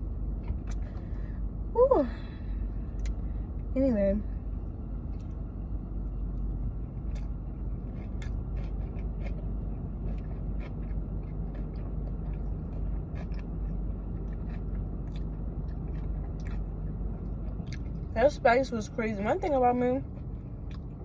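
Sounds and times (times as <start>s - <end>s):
steady low hum: 0.0s - 21.0s
person chewing food: 6.3s - 18.1s, 20.2s - 21.0s
soft crunches and mouth clicks: 7.1s - 18.2s, 20.2s - 21.0s.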